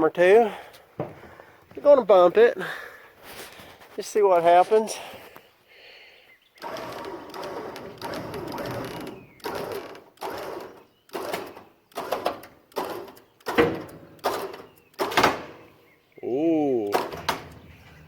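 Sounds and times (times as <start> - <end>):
baler bumps straining: 0.7 - 2.5, 6.6 - 15.7, 16.6 - 18.0
winch motor pulling: 6.6 - 13.6.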